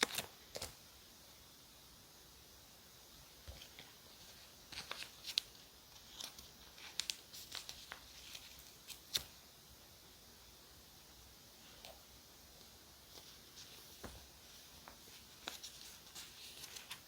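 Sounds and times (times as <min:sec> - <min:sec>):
paper clicks snaps and rustles: 0:00.0 - 0:00.8, 0:04.7 - 0:09.4.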